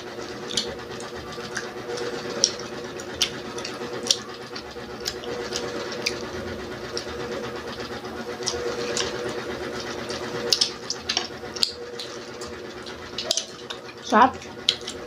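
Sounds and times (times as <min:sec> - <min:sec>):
chewing crispy fried food: 0:00.0 - 0:15.0
steady low hum: 0:00.0 - 0:15.0.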